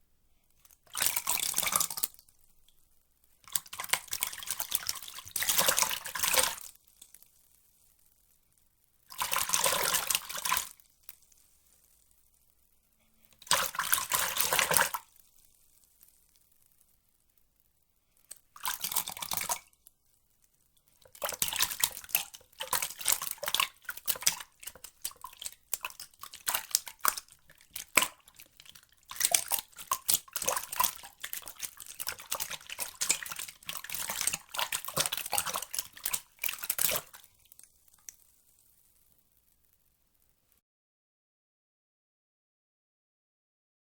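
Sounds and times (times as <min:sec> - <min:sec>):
water splashing and trickling: 0:00.6 - 0:02.4, 0:03.4 - 0:07.2, 0:09.1 - 0:10.9, 0:13.4 - 0:15.3, 0:18.5 - 0:19.8, 0:20.9 - 0:38.2.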